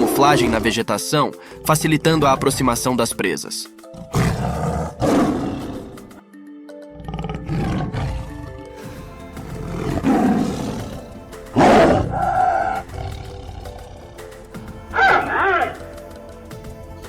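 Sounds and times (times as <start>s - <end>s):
tiger roaring: 0.0s - 0.8s, 3.8s - 6.2s, 7.0s - 14.3s, 14.9s - 16.0s
background music: 0.0s - 17.0s.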